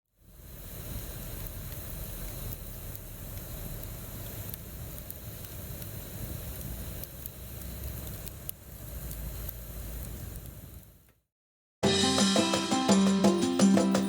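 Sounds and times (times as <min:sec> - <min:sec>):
campfire crackling and popping: 0:00.4 - 0:11.0.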